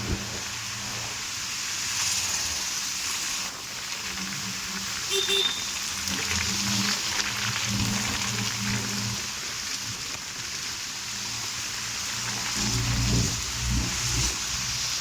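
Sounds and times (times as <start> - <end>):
heavy rain falling: 0.0 - 15.0
short tone: 5.1 - 5.8.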